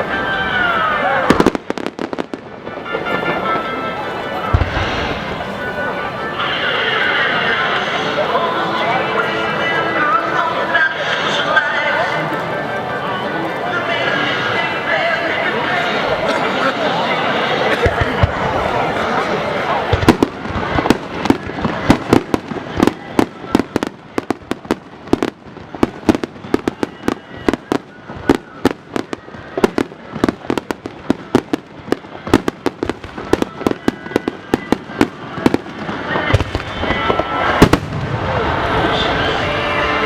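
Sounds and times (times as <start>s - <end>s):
fireworks shells bursting: 1.3s - 6.8s.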